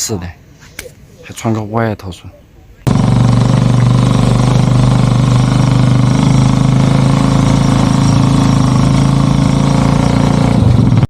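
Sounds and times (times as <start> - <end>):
motorcycle engine running: 2.9 - 11.0.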